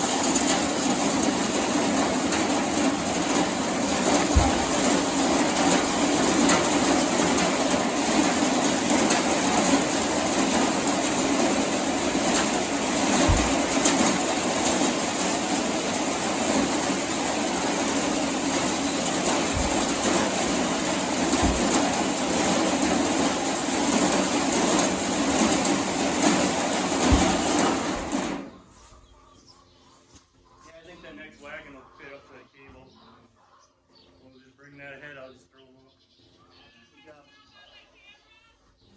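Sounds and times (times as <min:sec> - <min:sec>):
tractor and farm machinery running: 0:00.0 - 0:28.5
dull low thumps: 0:03.4 - 0:06.8, 0:10.4 - 0:24.0.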